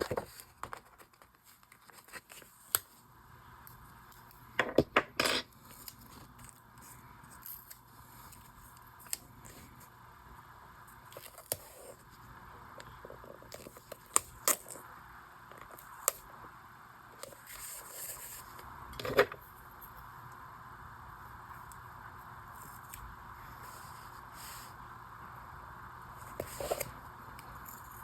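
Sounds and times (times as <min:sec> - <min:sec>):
paper rustling and scraping: 0:00.0 - 0:02.8, 0:17.2 - 0:19.2, 0:26.2 - 0:27.0
faint hiss: 0:19.5 - 0:28.0.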